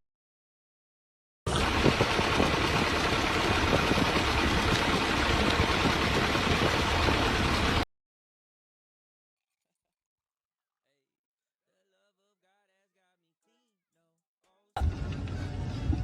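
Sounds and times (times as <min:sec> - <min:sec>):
engine running steadily: 0:01.5 - 0:07.8, 0:14.8 - 0:16.0.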